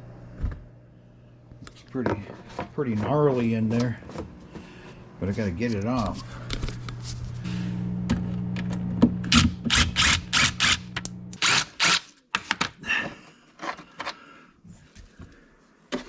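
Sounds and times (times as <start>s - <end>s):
power tool motor running: 9.2s - 12.0s.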